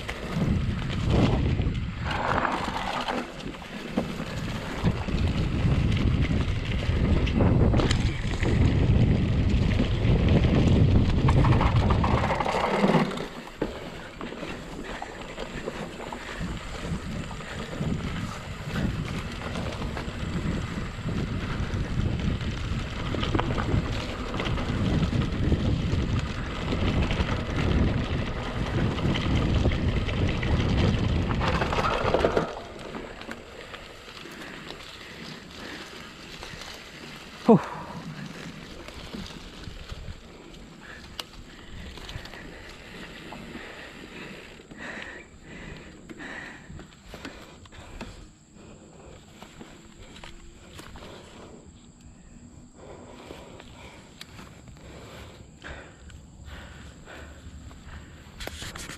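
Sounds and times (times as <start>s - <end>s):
wind rushing over microphone: 0.0s - 45.9s
low rumble of bike ride: 0.0s - 58.9s.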